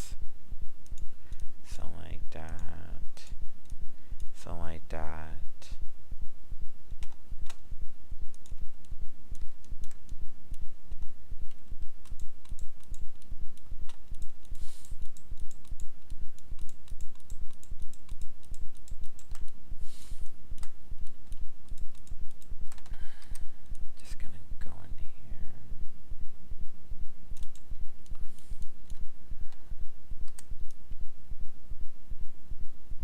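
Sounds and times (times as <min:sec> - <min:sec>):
low electrical hum: 0:00.0 - 0:33.0
keyboard and mouse clicks: 0:02.4 - 0:02.8, 0:06.9 - 0:07.6, 0:08.3 - 0:19.6, 0:20.5 - 0:23.9, 0:27.3 - 0:29.0, 0:30.2 - 0:31.0.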